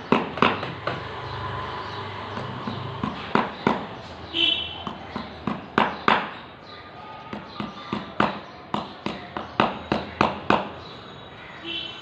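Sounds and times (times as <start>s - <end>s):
sharp knocks: 0.0s - 1.1s, 2.3s - 3.9s, 4.8s - 6.4s.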